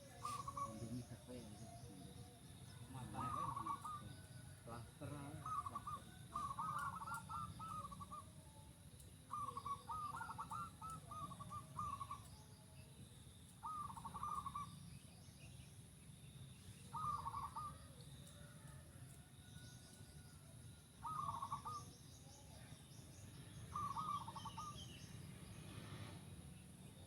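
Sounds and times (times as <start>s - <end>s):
doves cooing: 0.0s - 8.5s, 9.3s - 12.4s, 13.6s - 14.8s, 16.8s - 20.0s, 21.0s - 22.0s, 23.6s - 25.1s.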